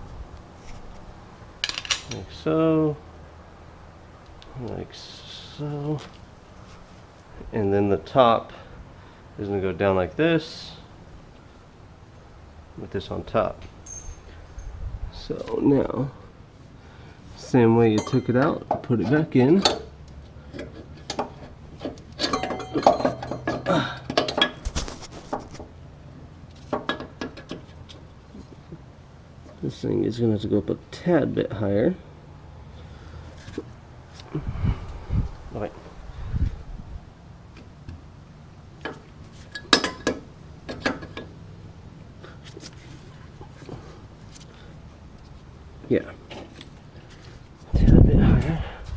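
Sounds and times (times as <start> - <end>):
metal clinks scrapes and knocks: 1.6 - 2.3, 13.7 - 14.8, 17.9 - 25.7, 38.8 - 41.4.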